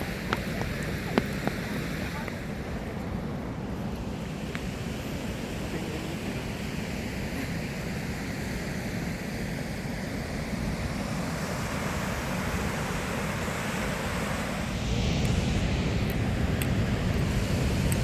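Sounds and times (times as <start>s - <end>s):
waterfall roaring: 4.2s - 18.0s.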